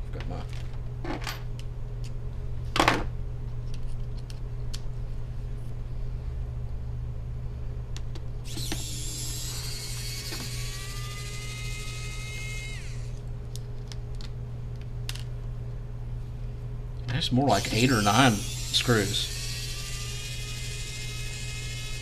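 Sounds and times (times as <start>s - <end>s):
steady low hum: 0.0s - 22.0s
small electric motor whining: 8.4s - 13.2s, 17.5s - 22.0s.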